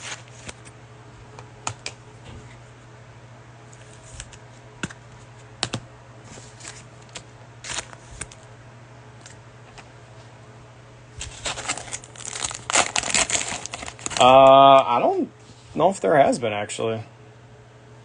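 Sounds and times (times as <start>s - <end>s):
low steady hum: 0.0s - 18.0s
cards tapping and sliding: 3.8s - 5.0s, 5.6s - 8.4s.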